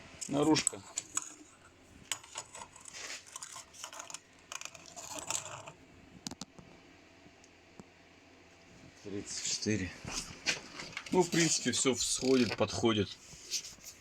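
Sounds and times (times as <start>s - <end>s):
metal washers clinking: 0.6s - 5.8s.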